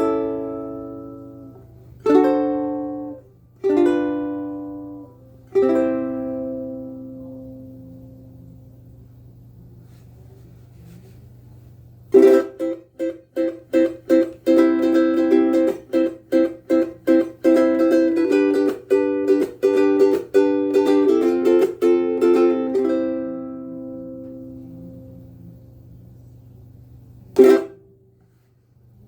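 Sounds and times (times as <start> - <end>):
ukulele strumming: 0.0 - 8.5, 12.1 - 25.4, 27.3 - 28.1.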